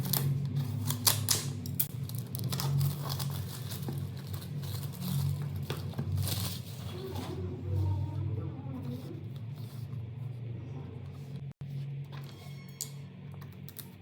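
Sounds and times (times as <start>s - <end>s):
plastic packaging crinkling and tearing: 0.0s - 7.5s.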